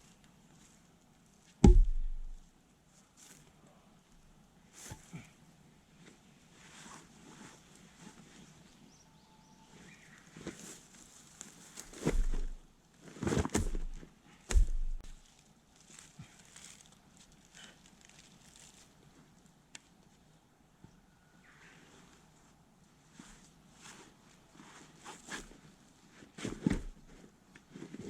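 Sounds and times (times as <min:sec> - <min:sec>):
firewood thumping and knocking: 0:01.6 - 0:02.4, 0:12.0 - 0:12.6, 0:13.5 - 0:15.2
rustling handling noises: 0:10.2 - 0:20.3.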